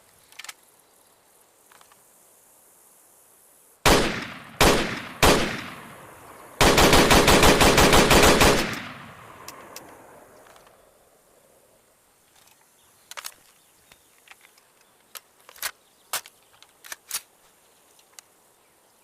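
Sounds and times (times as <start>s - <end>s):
rifle action clicks and clacks: 12.4s - 17.3s.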